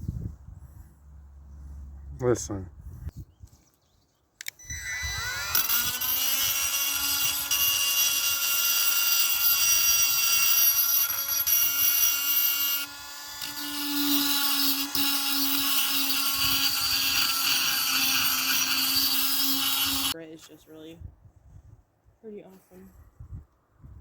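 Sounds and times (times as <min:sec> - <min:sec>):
power tool motor whining: 0:04.5 - 0:20.2.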